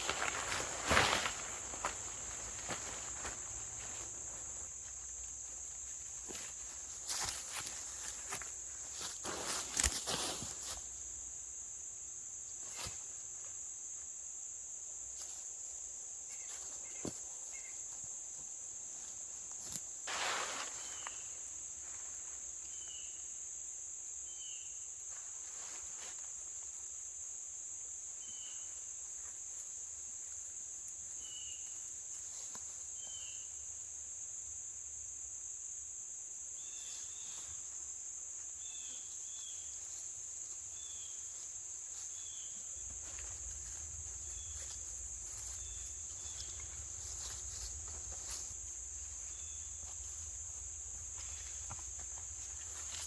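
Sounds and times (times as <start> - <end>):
insect chorus droning: 0.0 - 53.0
rustles and knocks: 42.6 - 53.0.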